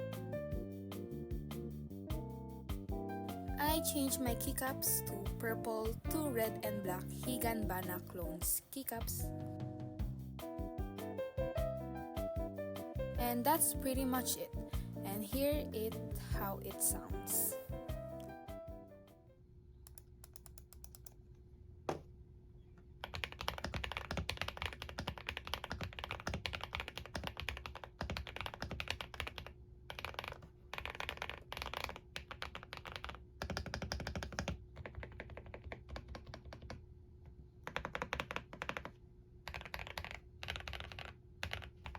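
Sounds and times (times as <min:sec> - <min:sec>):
mechanical keyboard typing: 0:19.9 - 0:21.2, 0:23.0 - 0:36.8, 0:37.6 - 0:41.9.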